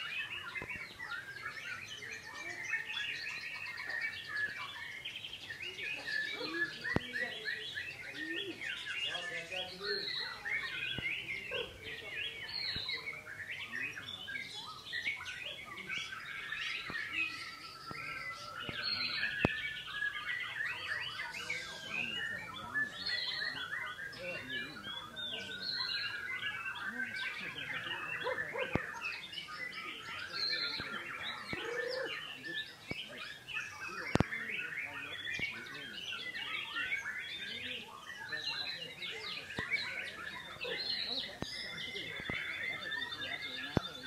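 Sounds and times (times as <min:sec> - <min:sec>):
birds singing: 0:00.0 - 0:44.0.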